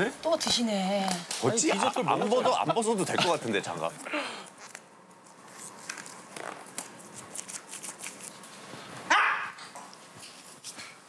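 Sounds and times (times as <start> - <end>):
dog barking: 9.1 - 9.6.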